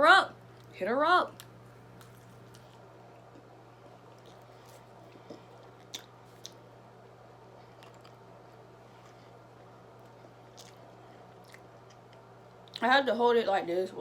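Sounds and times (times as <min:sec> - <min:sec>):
faint low hum: 0:00.0 - 0:14.0
person chewing: 0:01.4 - 0:06.7, 0:07.5 - 0:12.8.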